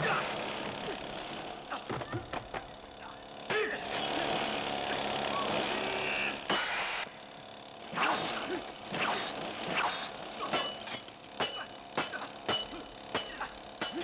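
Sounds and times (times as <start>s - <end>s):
loud steady noise: 0.0s - 14.0s
sharp hits: 6.5s - 7.0s, 7.9s - 14.0s.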